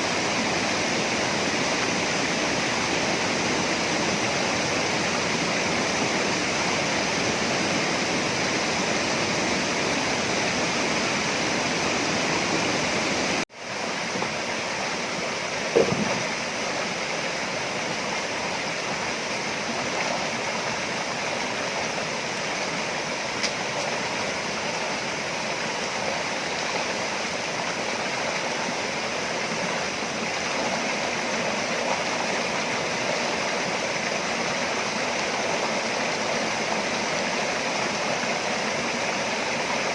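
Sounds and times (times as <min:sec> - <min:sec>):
waterfall rushing: 0:00.0 - 0:39.9
single knock: 0:15.7 - 0:16.2.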